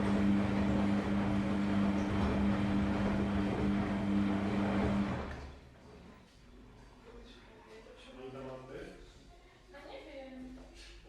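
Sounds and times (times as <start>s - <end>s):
washing machine humming: 0.0s - 6.2s.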